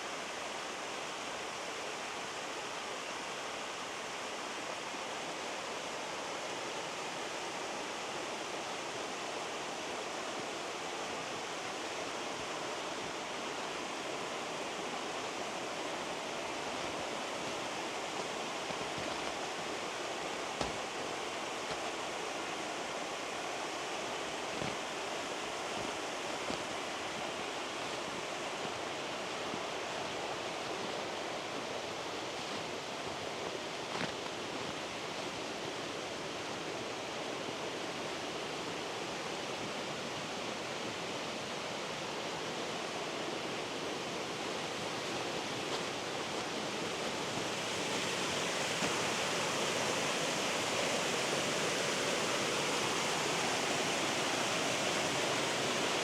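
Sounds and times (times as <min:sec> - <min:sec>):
mountain stream rushing: 0:00.0 - 0:56.0.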